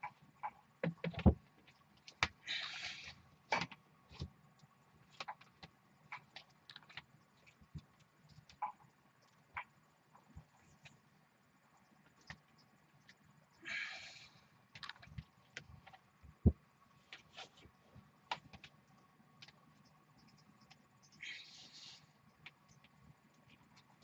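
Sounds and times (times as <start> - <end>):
small clicks and taps: 19.4 - 20.9.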